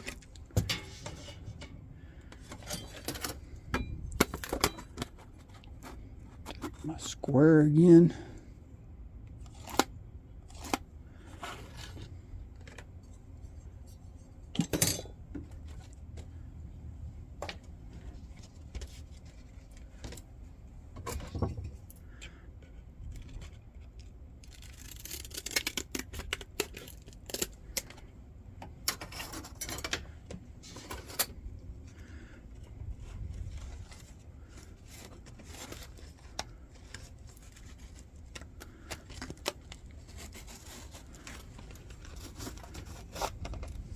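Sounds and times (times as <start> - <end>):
tools clicking and scraping: 28.7 - 31.4.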